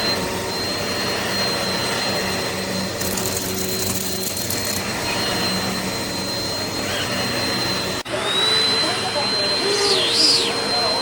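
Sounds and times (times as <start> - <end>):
upright vacuum cleaner running: 0.0 - 11.0
clattering rattle: 3.0 - 4.9.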